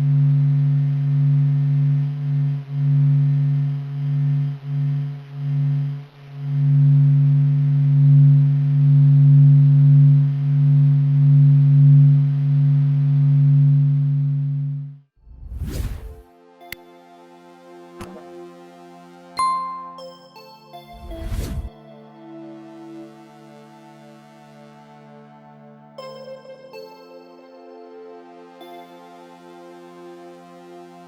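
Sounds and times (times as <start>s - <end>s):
low electronic hum: 0.0s - 16.5s, 20.8s - 25.9s.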